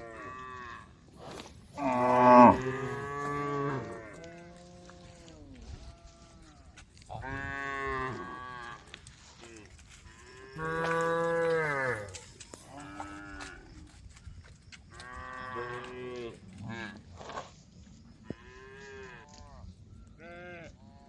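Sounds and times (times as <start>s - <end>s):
cows mooing: 1.8s - 5.0s, 10.5s - 13.6s.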